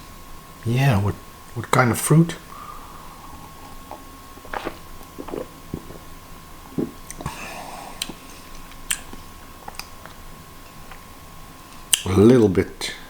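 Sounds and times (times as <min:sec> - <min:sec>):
breathy rush: 0:02.5 - 0:06.0
mouth clicks and smacks: 0:02.5 - 0:10.2.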